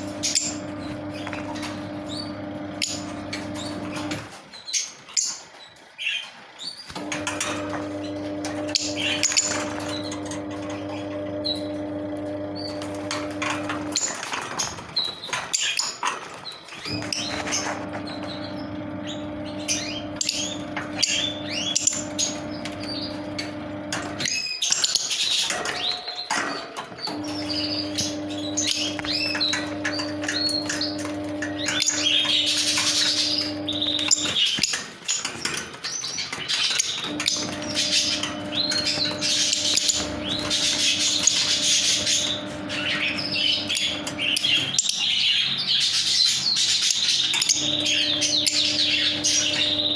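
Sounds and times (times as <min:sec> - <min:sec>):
birds chirping shrilly: 0:00.0 - 0:49.9.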